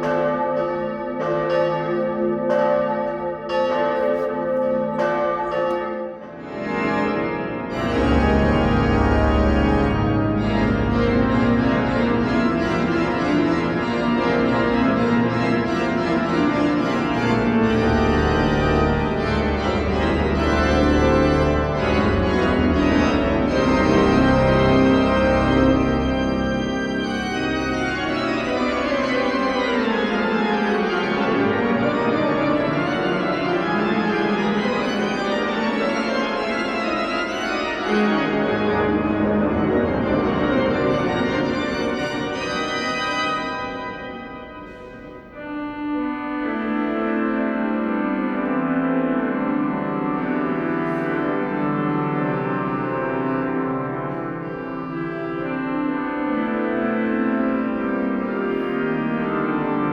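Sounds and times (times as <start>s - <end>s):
church organ chords: 0.0s - 59.9s.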